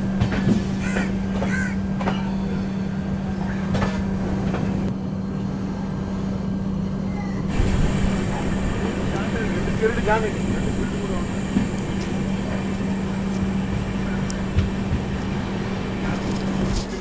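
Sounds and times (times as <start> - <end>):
train interior hum: 0.0 - 17.0
high whine: 7.5 - 16.5.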